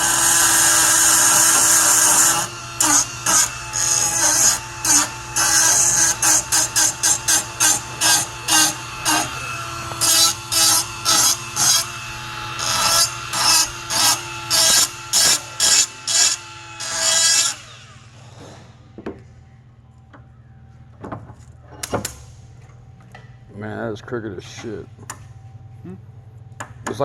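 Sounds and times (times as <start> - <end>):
grinder motor whine: 0.0 - 18.6.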